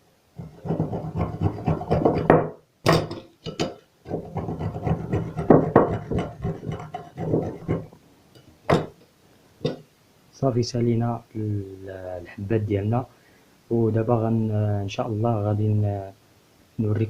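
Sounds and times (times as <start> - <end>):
cones being grated by hand: 0.4 - 2.4, 4.1 - 8.0.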